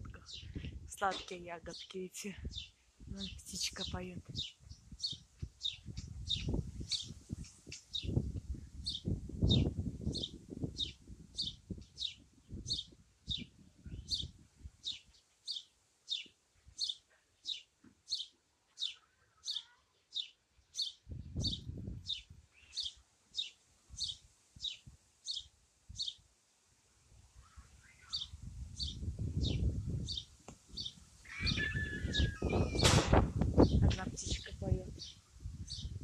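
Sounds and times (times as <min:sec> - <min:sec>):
wind rumbling on microphone: 0:00.0 - 0:01.7, 0:02.3 - 0:15.0, 0:21.0 - 0:22.5, 0:27.2 - 0:36.0
songbird repeating high call: 0:30.8 - 0:33.0.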